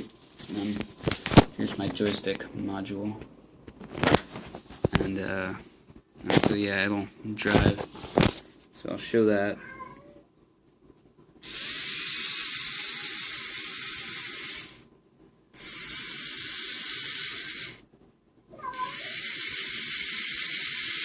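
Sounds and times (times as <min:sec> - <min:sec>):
small gear motors whirring: 0:11.4 - 0:14.9, 0:15.6 - 0:17.8, 0:18.6 - 0:21.0.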